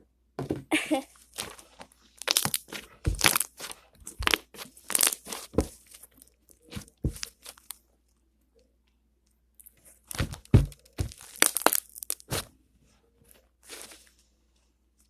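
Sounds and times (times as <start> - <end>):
slime popping and crackling: 1.3 - 5.8, 6.6 - 7.8, 10.1 - 12.5.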